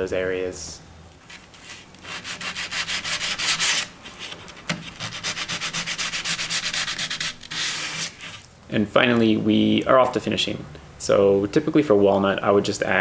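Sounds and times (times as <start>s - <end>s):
sandpaper sanding wood: 1.3s - 8.4s.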